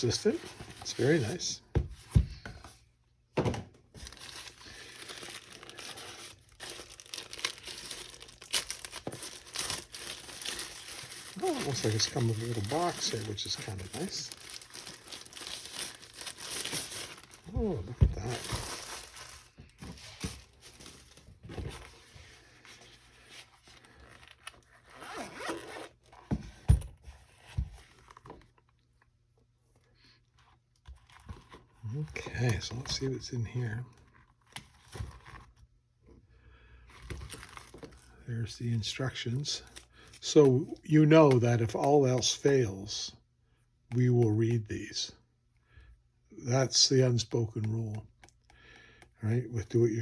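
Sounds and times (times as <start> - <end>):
packaging pouch crinkling: 4.0 - 21.2.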